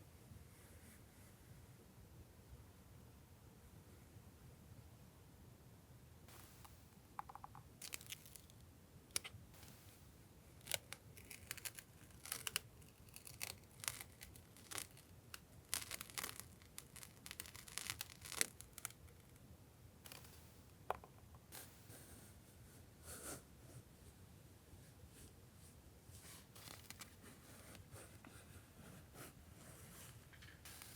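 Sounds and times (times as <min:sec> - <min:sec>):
packaging tearing: 0:07.8 - 0:08.5, 0:10.6 - 0:19.3, 0:26.6 - 0:27.2
packaging crinkling and rustling: 0:07.8 - 0:08.6, 0:10.6 - 0:19.3, 0:26.6 - 0:27.2.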